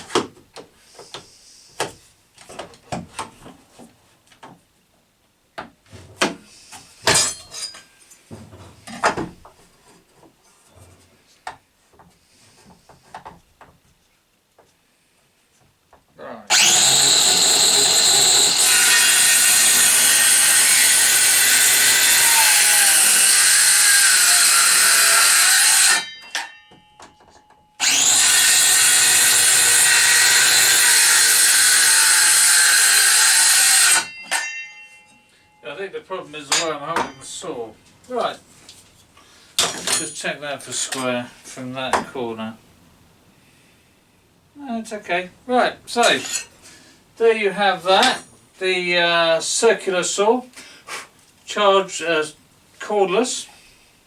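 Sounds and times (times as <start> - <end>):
circular saw cutting wood: 16.5 - 26.5, 27.8 - 34.5.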